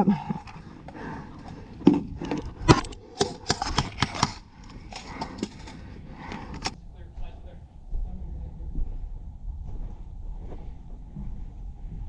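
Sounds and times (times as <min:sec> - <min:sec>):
irregular knocks and clicks: 0:00.8 - 0:06.8.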